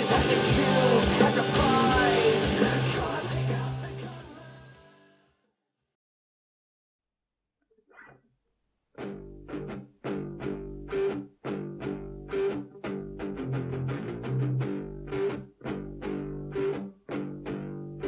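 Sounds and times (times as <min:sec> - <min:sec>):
plucked guitar over bass: 0:00.0 - 0:04.2, 0:09.0 - 0:18.0.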